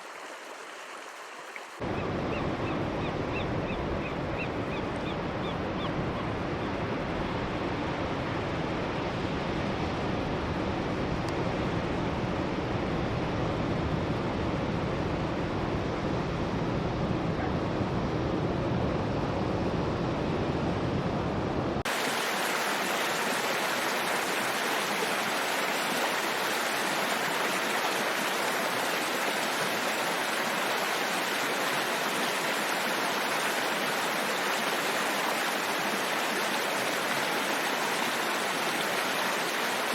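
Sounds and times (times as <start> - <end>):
running water hissing: 0.0 - 1.8, 21.9 - 39.9.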